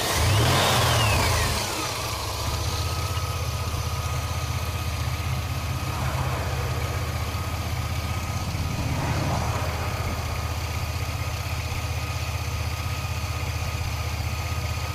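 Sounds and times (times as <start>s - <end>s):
car engine idling: 0.0s - 14.9s
high-pitched whine: 2.1s - 13.1s.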